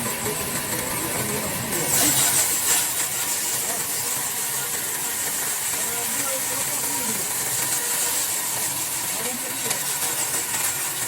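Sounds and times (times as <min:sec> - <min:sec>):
power tool cutting wood: 0:00.0 - 0:11.0.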